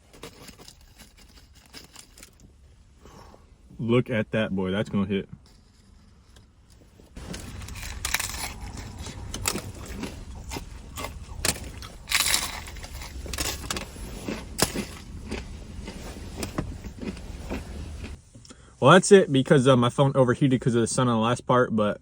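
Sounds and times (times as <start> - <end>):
steady low hum: 0.0 - 19.8
crunching hard-shell taco: 6.0 - 18.2.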